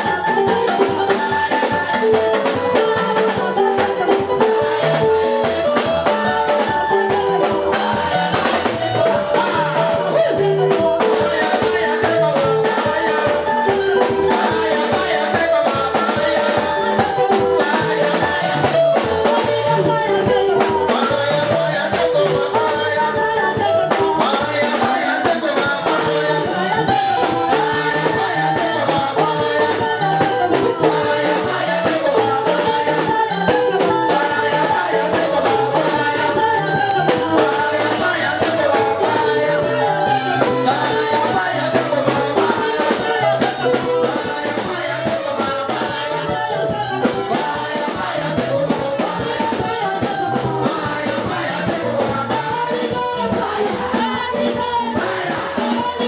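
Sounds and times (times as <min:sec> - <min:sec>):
church worship music: 0:00.0 - 0:56.0.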